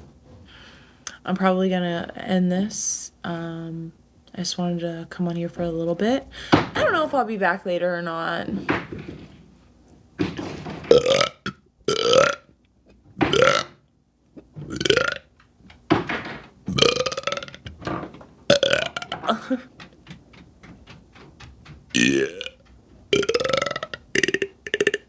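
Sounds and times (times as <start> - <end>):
woman burping: 18.5 - 19.7.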